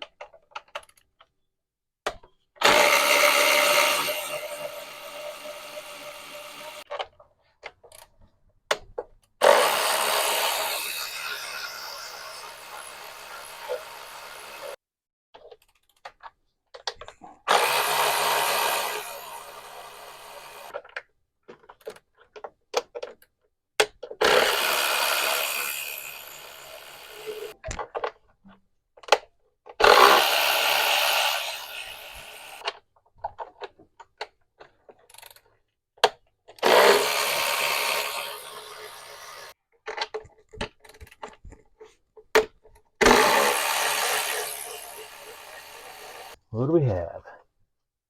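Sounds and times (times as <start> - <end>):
cordless power tool running: 2.6 - 6.8, 9.4 - 14.8, 17.5 - 20.7, 24.2 - 27.6, 29.8 - 32.6, 36.6 - 39.5, 43.0 - 46.4.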